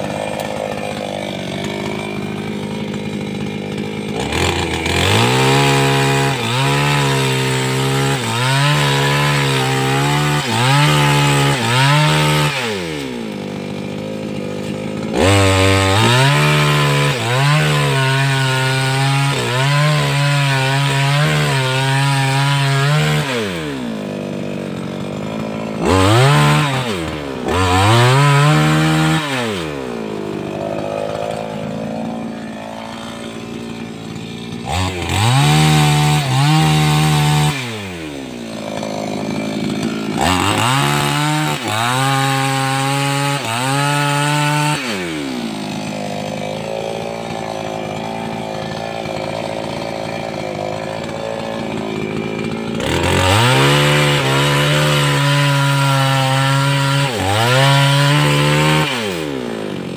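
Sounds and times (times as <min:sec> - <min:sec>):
chainsaw cutting wood: 0:00.0 - 0:59.9.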